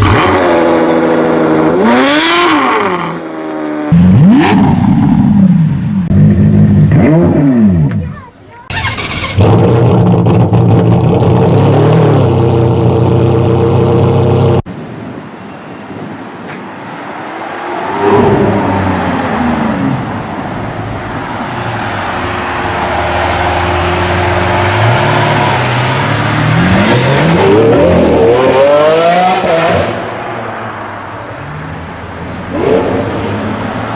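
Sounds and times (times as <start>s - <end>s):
loud steady car engine: 0.0s - 14.7s, 17.9s - 33.9s
car accelerating through gears: 22.9s - 30.1s.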